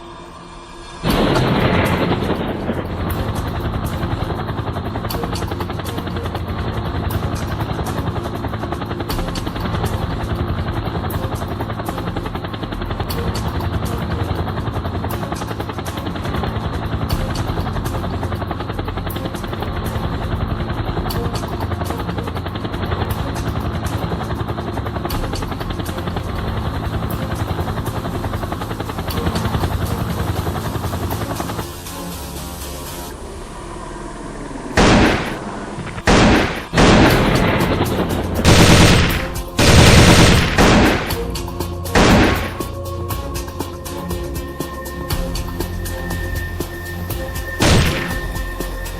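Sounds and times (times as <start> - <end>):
background music: 0.0 - 48.9
pulsing engine drone: 0.0 - 48.9
gunfire sound effects: 38.5 - 41.2.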